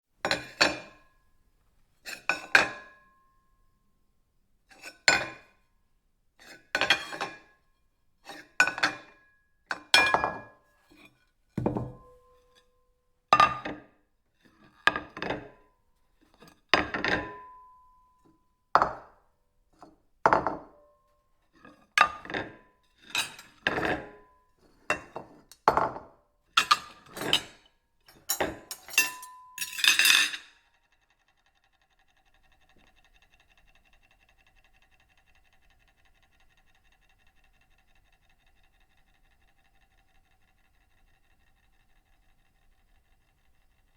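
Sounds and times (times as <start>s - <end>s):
ceramic plates clinking: 28.2s - 30.5s.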